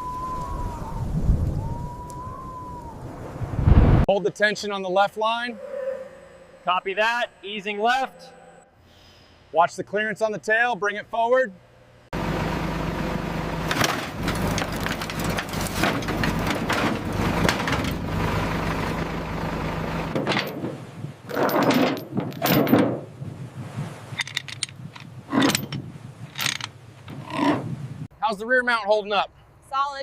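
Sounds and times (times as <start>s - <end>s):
machinery humming: 11.8s - 20.2s
metallic knocks and rattles: 13.7s - 18.1s, 20.1s - 23.1s, 24.2s - 27.7s
scraping: 13.7s - 19.0s.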